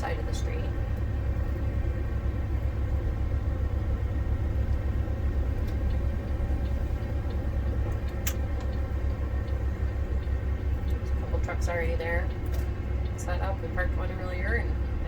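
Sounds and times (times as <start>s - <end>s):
truck diesel engine rumbling: 0.0s - 15.0s
sharp click: 8.1s - 8.4s.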